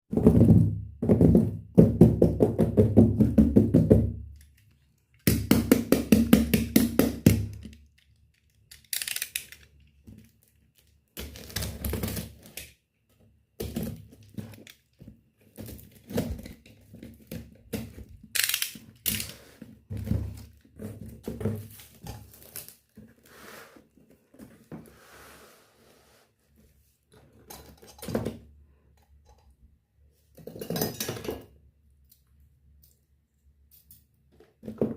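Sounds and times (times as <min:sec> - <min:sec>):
toy pieces clicking and tapping: 0:05.2 - 0:09.9.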